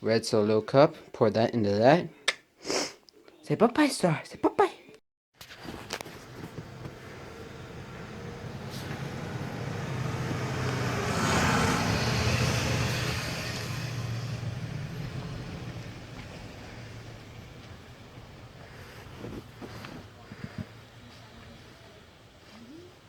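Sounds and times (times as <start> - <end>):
truck driving past: 5.7 - 22.2.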